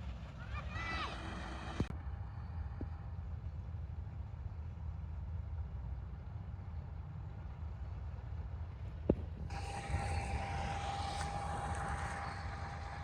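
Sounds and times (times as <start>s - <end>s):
high whine with hiss: 9.4s - 13.0s
combine harvester rumbling: 9.5s - 13.0s.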